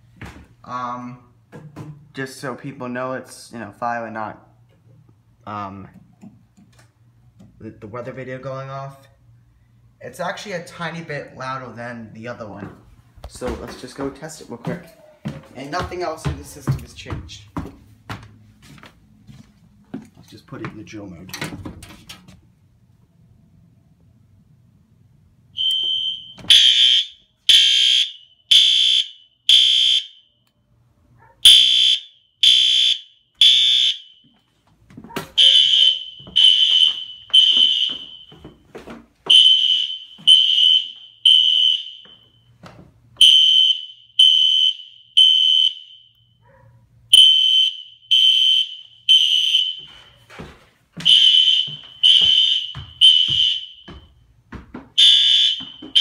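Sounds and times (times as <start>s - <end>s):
fire alarm beeps: 25.6s - 30.4s, 31.5s - 34.5s, 35.4s - 38.6s, 39.3s - 42.6s, 43.2s - 46.4s, 47.1s - 50.2s, 51.0s - 54.3s, 55.0s - 56.0s.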